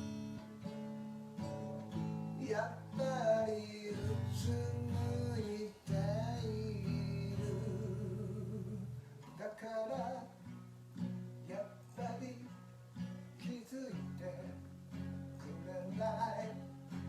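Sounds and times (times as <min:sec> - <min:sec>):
acoustic guitar: 0:00.0 - 0:17.0
person singing with vibrato: 0:02.4 - 0:10.5.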